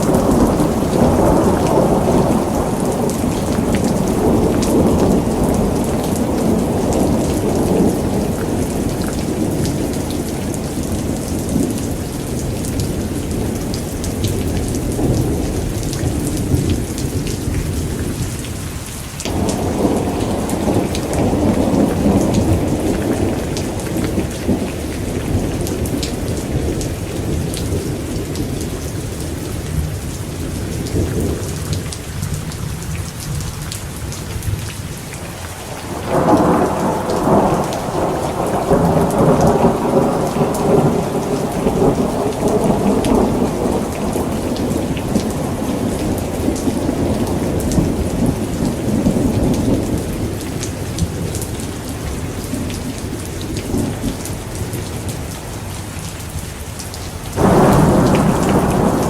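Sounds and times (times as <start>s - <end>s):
steady rain: 0.0s - 59.0s
loud thunderclap: 19.3s - 28.6s, 35.8s - 50.4s, 57.4s - 59.0s
low thunder rumble: 19.3s - 34.6s, 35.6s - 55.2s, 57.4s - 59.0s.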